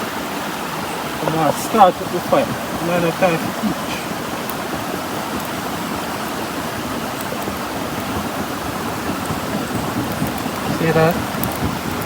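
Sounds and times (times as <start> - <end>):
river water rushing: 0.0 - 12.0
faint ticks: 9.2 - 12.0.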